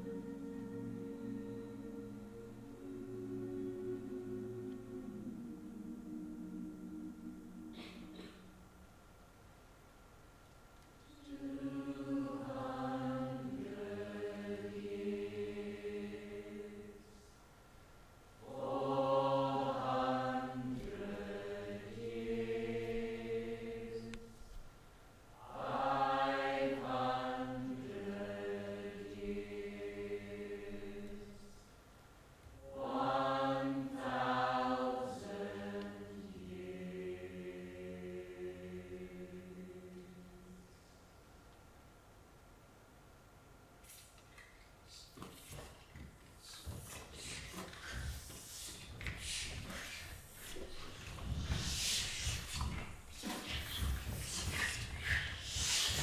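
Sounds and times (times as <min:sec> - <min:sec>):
voices singing a slow chant: 0:00.0 - 0:08.7, 0:11.0 - 0:17.5, 0:18.4 - 0:24.6, 0:25.4 - 0:31.8, 0:32.6 - 0:41.1, 0:46.4 - 0:56.0
singers breathing: 0:46.4 - 0:56.0.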